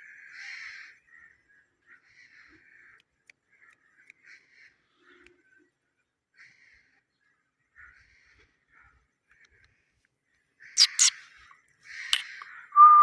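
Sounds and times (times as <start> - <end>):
parrot chirping: 10.8 - 11.2.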